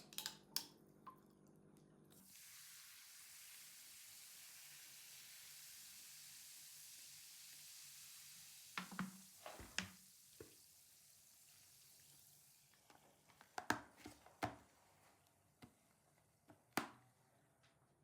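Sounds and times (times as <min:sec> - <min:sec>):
knocks of food preparation: 0:08.8 - 0:10.0.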